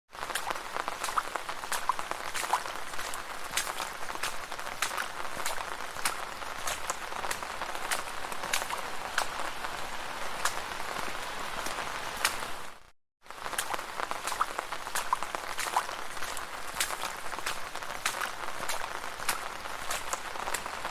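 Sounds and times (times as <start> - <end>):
raindrops ticking on hard surfaces: 0.2 - 20.9
steady rain hiss: 5.6 - 20.9.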